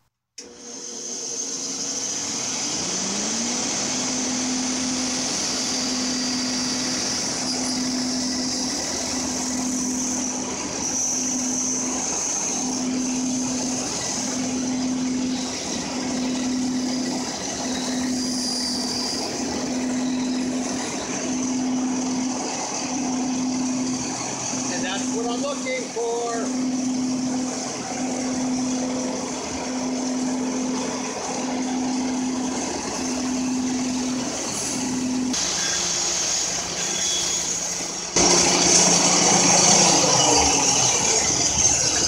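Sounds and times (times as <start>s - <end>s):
bandsaw cutting wood: 0.4s - 14.6s, 38.2s - 42.0s.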